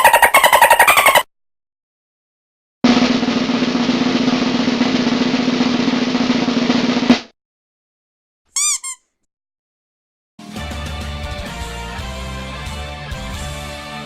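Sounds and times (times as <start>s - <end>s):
snare drum roll: 2.8s - 7.3s.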